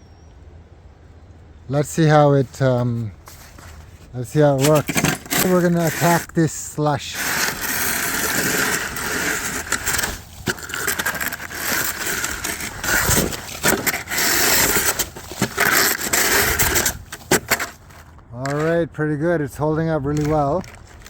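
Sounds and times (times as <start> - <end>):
shovel scraping wet slush: 3.3 - 18.0.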